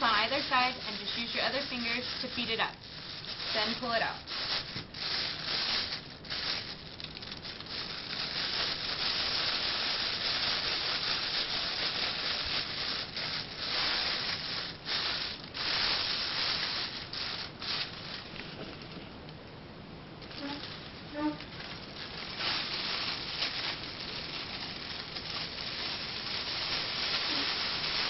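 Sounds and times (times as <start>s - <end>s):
plastic bags crinkling: 0.0s - 19.0s, 20.2s - 28.0s.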